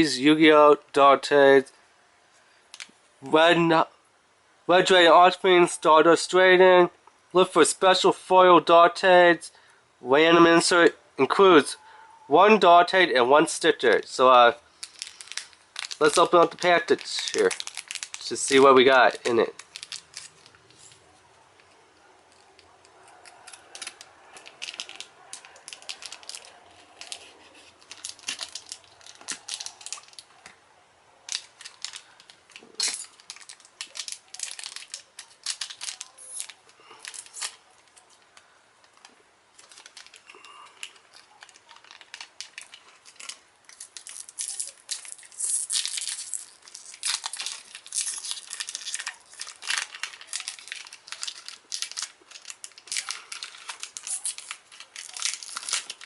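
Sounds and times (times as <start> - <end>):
packaging crinkling and tearing: 14.7 - 30.6, 31.2 - 56.0.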